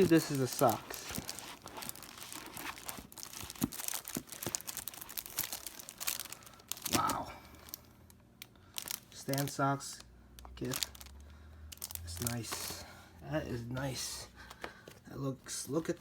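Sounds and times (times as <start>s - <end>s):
packaging crinkling: 0.0s - 12.8s.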